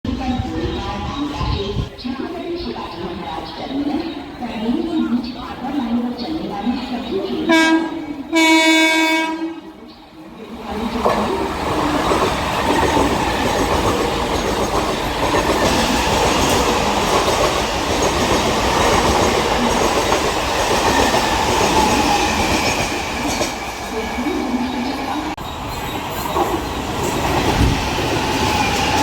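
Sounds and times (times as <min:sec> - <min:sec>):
train wheels on rails: 0:00.1 - 0:29.0
train horn blast: 0:07.5 - 0:09.6.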